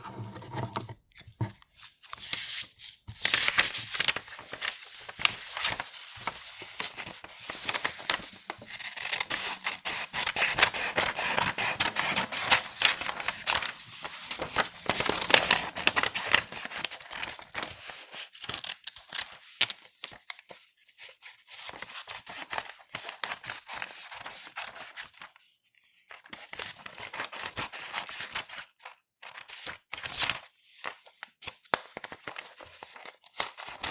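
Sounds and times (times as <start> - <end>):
paper rustling: 0.0 - 18.6
scissors snipping paper: 7.7 - 13.4.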